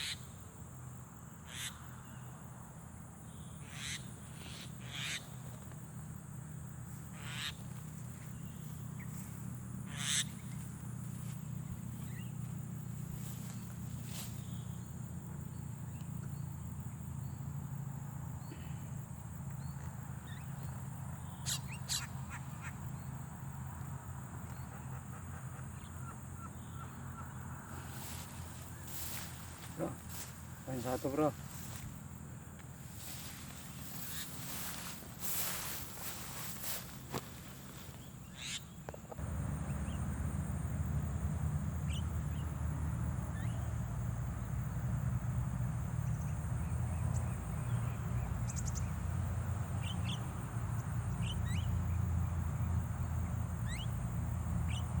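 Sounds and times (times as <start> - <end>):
steady low hum: 2.0 - 50.2
harsh bird calls: 7.0 - 10.7, 21.1 - 22.8, 24.5 - 31.9, 32.8 - 39.2
high insect-like drone: 27.4 - 38.0.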